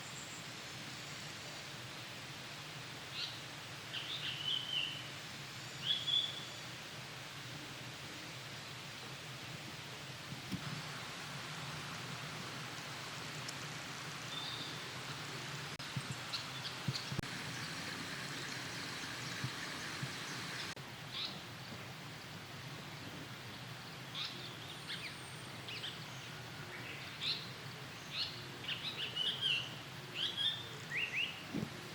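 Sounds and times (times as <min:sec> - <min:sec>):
background hiss: 0:00.0 - 0:31.9
bird chirping: 0:14.2 - 0:21.4.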